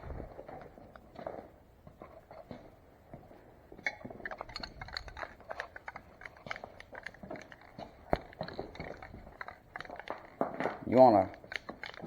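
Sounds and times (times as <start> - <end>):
small hard objects clinking: 3.9 - 12.0.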